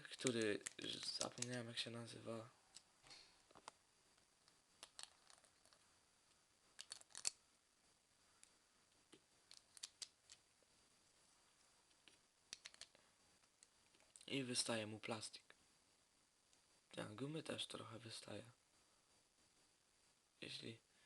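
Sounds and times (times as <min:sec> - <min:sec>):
plastic parts clicking and snapping: 0:00.0 - 0:01.6, 0:06.8 - 0:07.4, 0:12.5 - 0:13.0.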